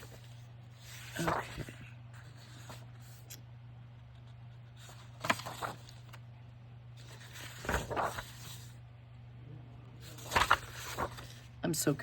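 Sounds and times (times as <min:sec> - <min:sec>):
paper rustling: 0:00.0 - 0:08.8, 0:10.0 - 0:11.6
steady low hum: 0:00.0 - 0:12.0.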